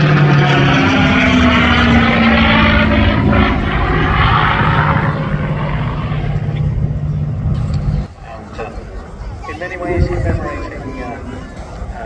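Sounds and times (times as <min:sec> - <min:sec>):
propeller plane engine passing: 0:00.0 - 0:08.3.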